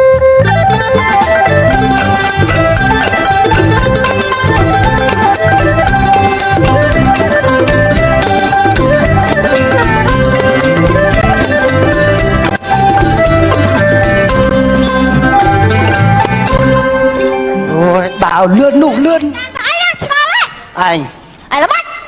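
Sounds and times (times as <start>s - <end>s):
hand drums: 0.0s - 17.2s
plucked strings: 0.0s - 18.4s
sliding melody: 0.0s - 19.1s.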